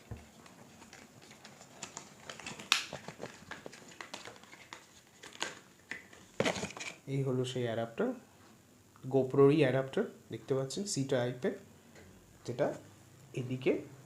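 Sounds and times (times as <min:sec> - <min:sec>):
packaging crinkling: 0:00.0 - 0:07.0.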